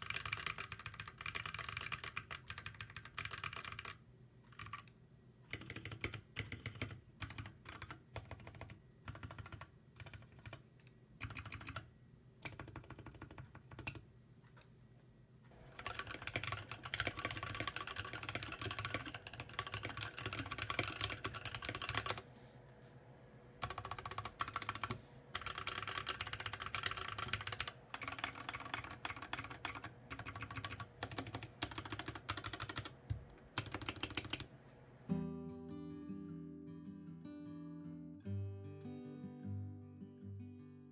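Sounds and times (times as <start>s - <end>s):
mechanical keyboard typing: 0.0s - 4.9s, 5.5s - 10.6s, 11.2s - 14.0s, 15.7s - 22.2s, 23.6s - 34.5s.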